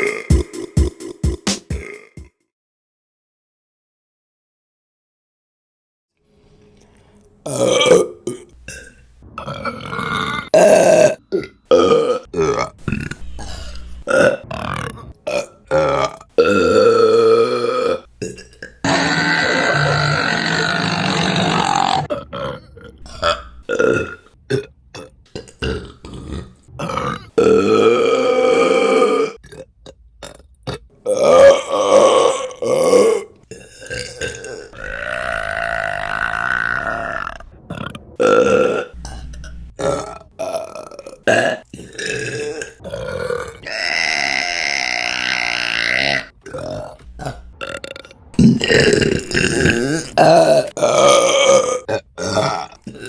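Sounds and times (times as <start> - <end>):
woman burping: 16.4 - 22.1.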